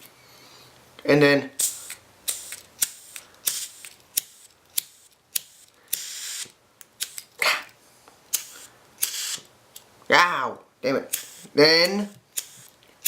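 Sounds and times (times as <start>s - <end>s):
lighter gas hiss: 1.6s - 9.5s.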